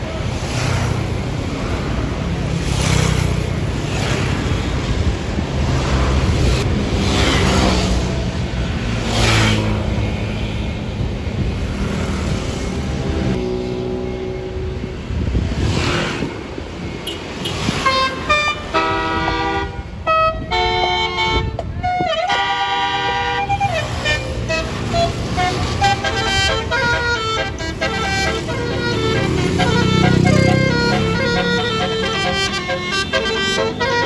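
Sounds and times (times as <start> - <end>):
bus engine noise: 0.0 - 34.0
multi-note bus horn tune: 17.1 - 34.0.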